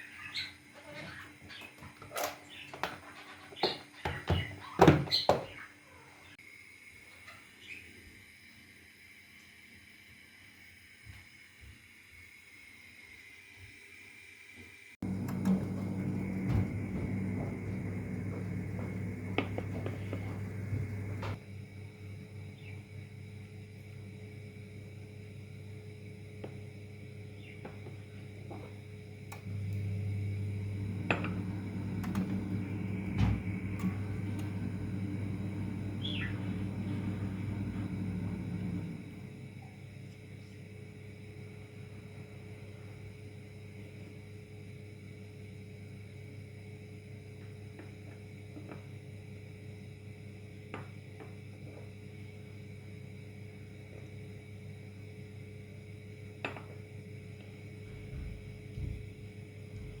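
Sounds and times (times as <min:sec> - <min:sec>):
steady low hum: 0:15.0 - 1:00.0.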